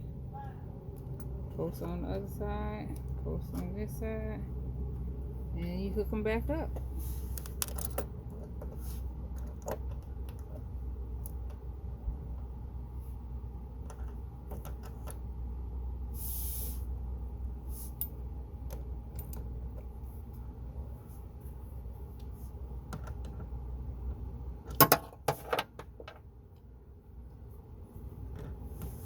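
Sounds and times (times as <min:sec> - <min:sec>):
low rumble: 0:00.0 - 0:14.5.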